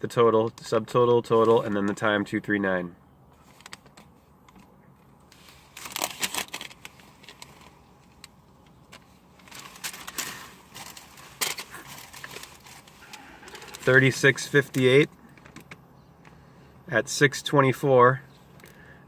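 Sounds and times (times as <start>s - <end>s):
paper rustling and crinkling: 5.3s - 8.3s, 8.9s - 15.6s.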